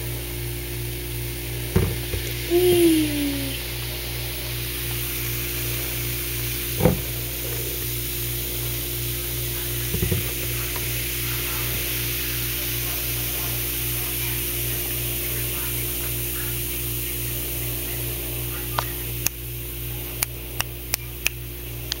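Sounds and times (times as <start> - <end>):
electrical hum: 0.0 - 22.0.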